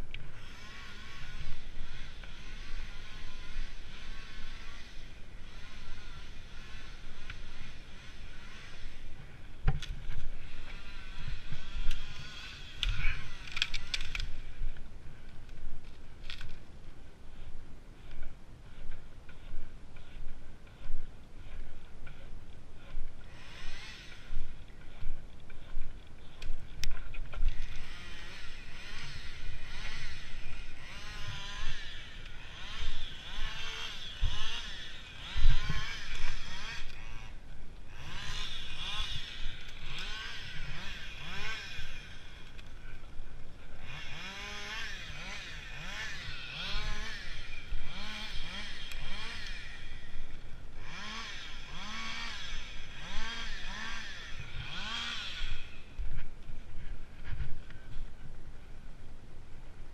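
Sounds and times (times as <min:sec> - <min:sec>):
handsaw sawing through wood: 0:00.4 - 0:09.1, 0:22.8 - 0:25.0, 0:27.6 - 0:37.3, 0:37.9 - 0:42.3, 0:43.8 - 0:50.2, 0:50.8 - 0:55.8.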